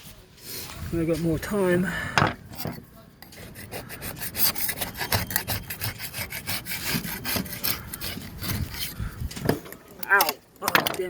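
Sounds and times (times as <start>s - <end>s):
scraping and clicking on wood: 2.2s - 11.0s.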